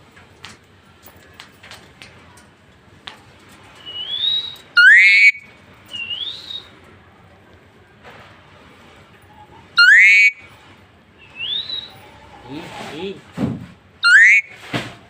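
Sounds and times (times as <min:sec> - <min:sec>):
parrot whistling: 0:03.8 - 0:06.7, 0:09.8 - 0:10.5, 0:11.2 - 0:11.9, 0:14.0 - 0:14.6.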